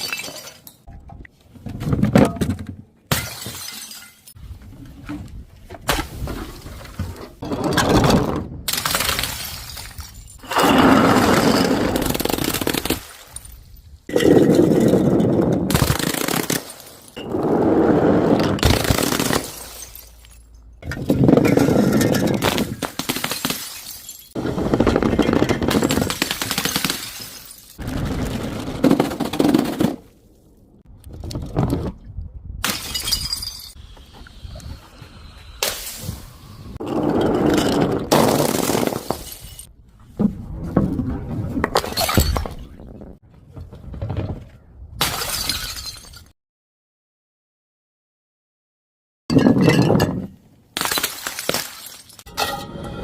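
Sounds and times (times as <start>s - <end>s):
glass bottles shattering: 0.0s - 0.9s, 3.1s - 4.4s, 8.7s - 10.5s, 18.7s - 24.4s, 25.7s - 27.8s, 32.6s - 33.8s, 37.6s - 39.7s, 41.8s - 42.7s, 45.0s - 46.3s, 49.3s - 52.8s.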